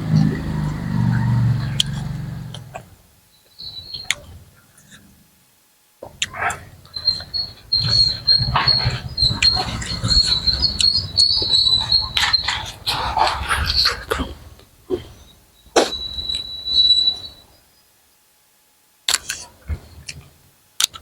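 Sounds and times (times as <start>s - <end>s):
cricket trilling: 6.3s - 17.9s.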